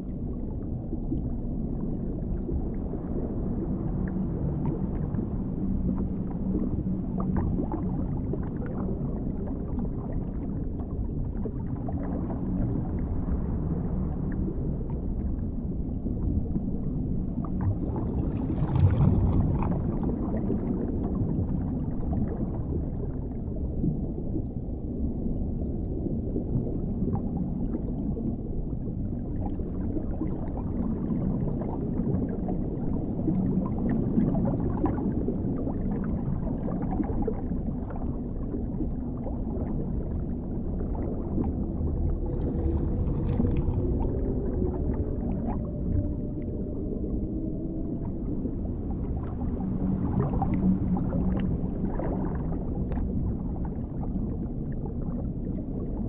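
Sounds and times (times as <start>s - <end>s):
deep underwater rumble: 0.0s - 56.0s
long low tone: 36.4s - 56.0s.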